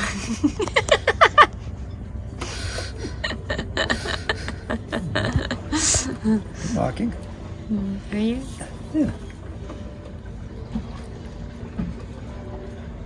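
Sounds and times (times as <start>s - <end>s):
person laughing: 0.0s - 1.6s, 2.7s - 6.7s.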